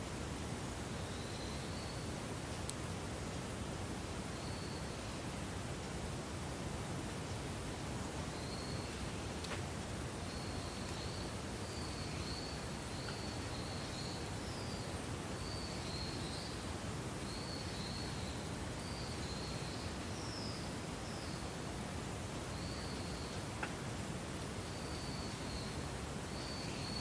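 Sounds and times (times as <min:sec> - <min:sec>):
steady background hiss: 0:00.0 - 0:27.0.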